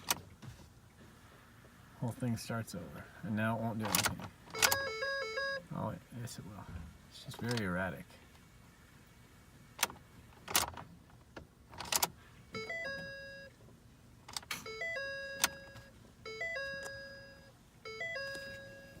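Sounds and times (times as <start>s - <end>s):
dashboard warning chime: 4.5s - 5.8s, 12.5s - 13.6s, 14.5s - 19.0s.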